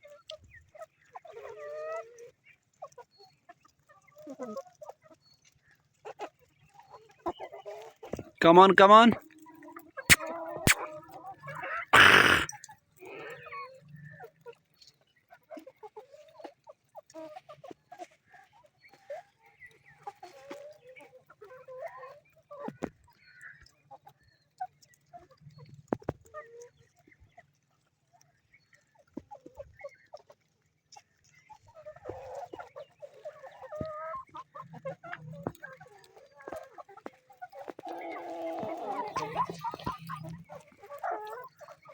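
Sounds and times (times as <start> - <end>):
hens clucking softly: 10.1 - 14.6, 31.2 - 41.9.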